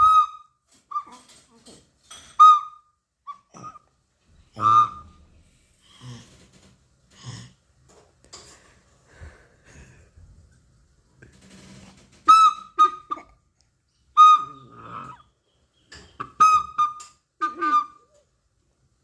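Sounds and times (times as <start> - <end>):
whistle-like chirps: 0.0 - 1.1, 2.4 - 2.9, 12.3 - 13.2, 16.4 - 18.1
faint squeaks: 0.0 - 5.4, 11.2 - 13.4
breathy sounds: 4.5 - 7.6, 8.4 - 10.2.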